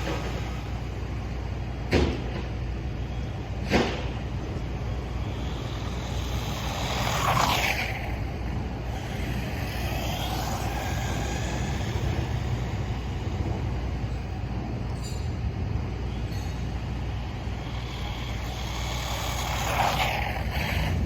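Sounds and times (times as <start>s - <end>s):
electric motor whining: 4.1s - 14.4s, 16.0s - 21.0s.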